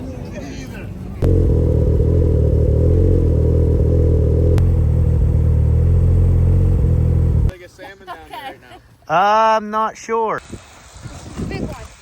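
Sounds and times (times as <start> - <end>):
engine running with deep hum: 1.2 - 7.5.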